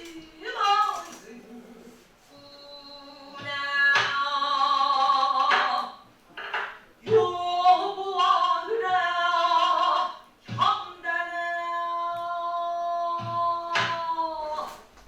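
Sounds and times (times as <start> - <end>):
solo voice singing long notes: 7.0 - 14.9.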